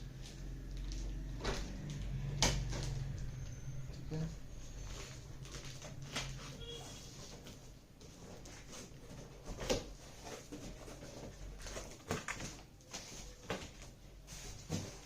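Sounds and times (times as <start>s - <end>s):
cardboard scraping and rustling: 4.6s - 15.0s.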